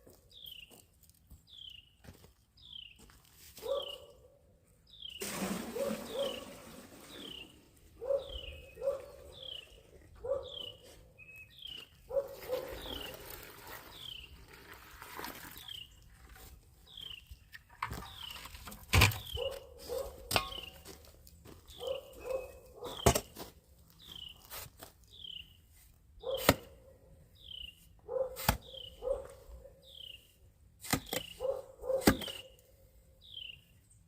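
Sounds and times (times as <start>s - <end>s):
dog barking: 3.6s - 4.2s, 5.7s - 6.4s, 8.0s - 9.4s, 10.2s - 10.8s, 12.1s - 13.0s, 19.4s - 20.3s, 21.8s - 23.0s, 26.2s - 26.5s, 28.1s - 28.4s, 29.0s - 29.5s, 31.4s - 32.2s.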